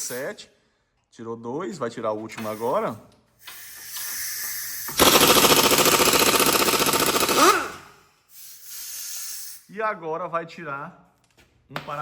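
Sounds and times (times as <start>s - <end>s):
pneumatic impact wrench hammering: 3.4s - 9.4s.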